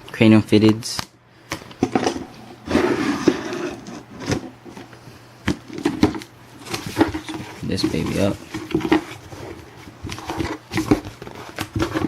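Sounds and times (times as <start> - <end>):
package scraping and rubbing: 2.6 - 4.9, 6.6 - 12.0.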